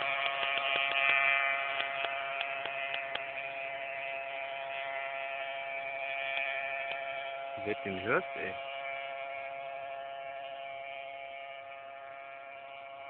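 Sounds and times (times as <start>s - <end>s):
distant moped engine buzzing: 0.0s - 13.0s.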